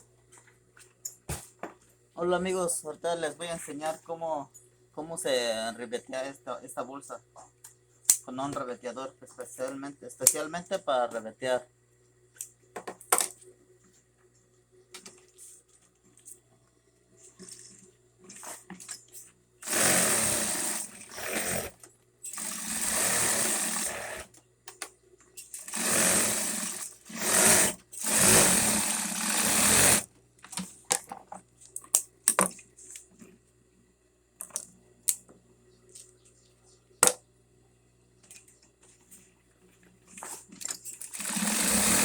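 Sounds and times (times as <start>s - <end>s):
sewing machine stitching: 19.6s - 24.3s, 25.6s - 30.1s, 40.9s - 42.0s.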